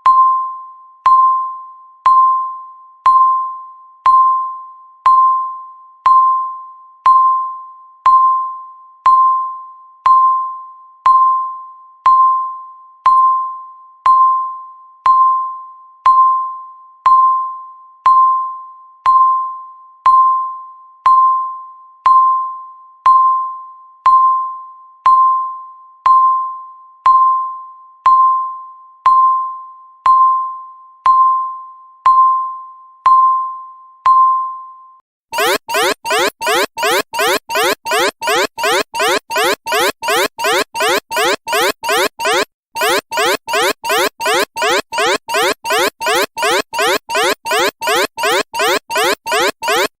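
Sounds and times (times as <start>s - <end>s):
countdown timer electronic chime: 35.4s - 50.0s.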